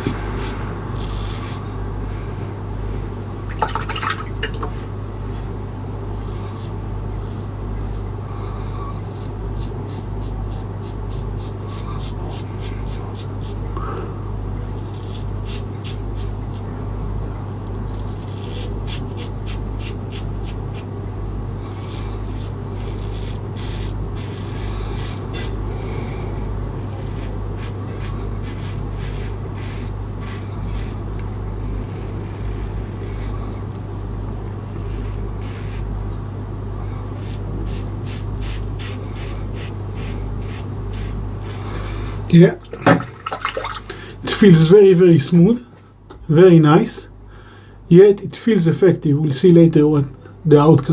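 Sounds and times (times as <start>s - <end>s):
steady low hum: 0.0s - 50.9s
razor scraping stubble: 0.4s - 1.7s, 6.0s - 13.6s, 14.6s - 16.7s, 17.7s - 20.9s, 21.7s - 26.0s, 26.8s - 33.5s, 34.6s - 36.0s, 37.1s - 41.8s.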